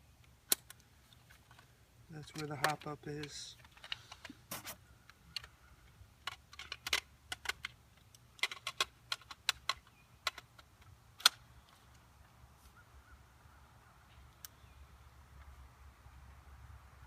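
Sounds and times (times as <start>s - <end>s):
airsoft gun clicks and knocks: 2.3s - 4.4s, 5.1s - 11.8s.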